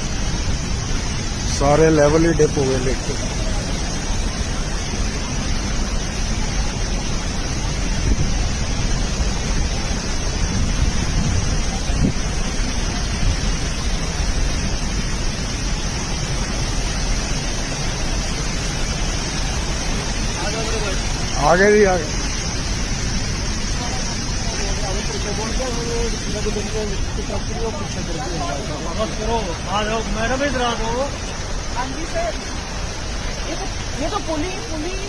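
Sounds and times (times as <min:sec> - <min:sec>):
roar of rushing water: 0:00.0 - 0:35.0.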